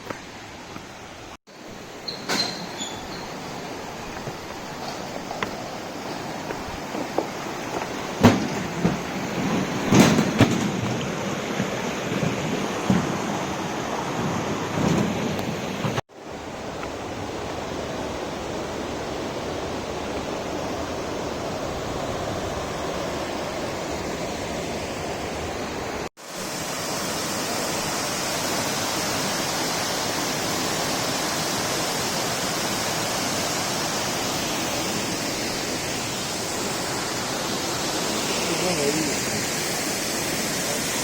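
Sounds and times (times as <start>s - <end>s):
waterfall rushing: 11.0s - 41.0s.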